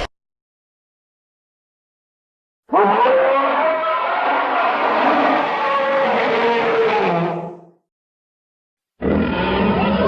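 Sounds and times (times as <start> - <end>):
deep creature call: 2.7 - 7.7, 9.0 - 10.0.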